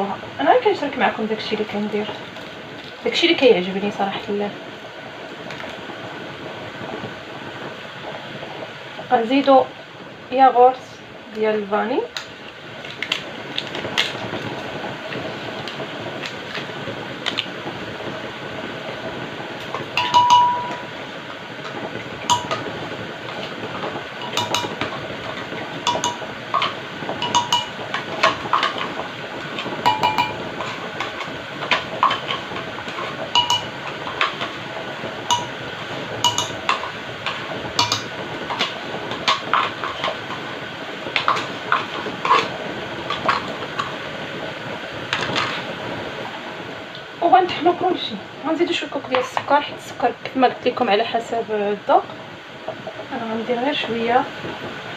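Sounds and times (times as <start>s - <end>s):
background hum: 0.0s - 54.7s
spoon clinking against container: 20.0s - 20.9s, 25.9s - 26.2s, 27.2s - 27.7s, 29.9s - 30.4s, 33.4s - 33.7s, 35.3s - 35.6s, 36.3s - 36.6s.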